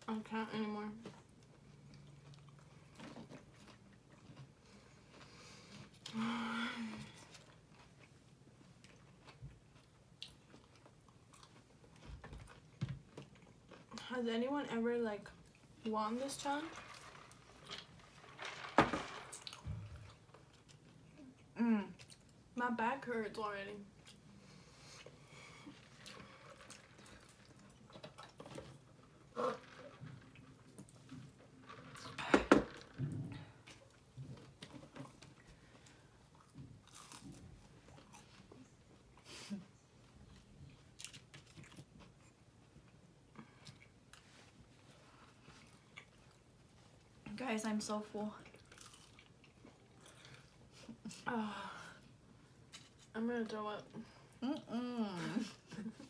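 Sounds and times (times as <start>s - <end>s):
chewing and mouth noises: 1.3s - 6.1s, 7.2s - 14.0s, 19.5s - 22.4s, 48.4s - 51.0s
person chewing and crunching: 7.2s - 14.0s, 36.3s - 38.5s, 40.8s - 44.3s, 48.5s - 50.8s.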